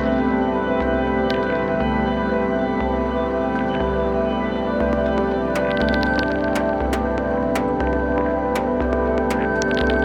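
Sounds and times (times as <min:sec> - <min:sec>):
light ticking percussion: 0:04.8 - 0:10.0.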